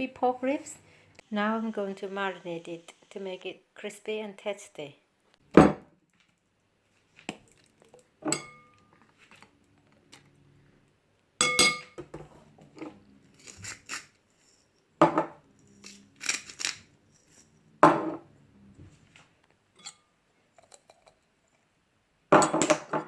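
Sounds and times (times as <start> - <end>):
utensils and dishes clinking: 7.9 - 9.0, 11.4 - 12.3, 19.8 - 21.2.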